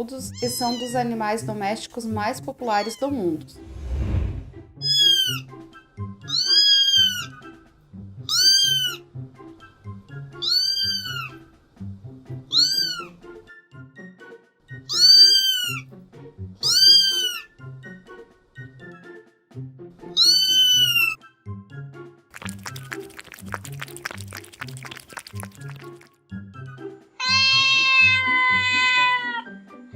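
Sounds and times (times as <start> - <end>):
background music: 0.0 - 29.9
kitten meowing: 0.3 - 1.0, 4.8 - 5.4, 6.3 - 7.3, 8.3 - 9.0, 10.4 - 11.4, 12.5 - 13.2, 14.9 - 15.8, 16.6 - 17.5, 20.2 - 21.2, 27.2 - 29.4.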